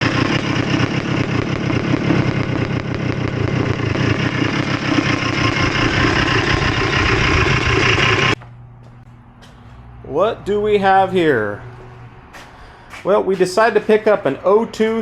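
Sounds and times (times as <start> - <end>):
dirt bike two-stroke engine running: 0.0 - 8.4.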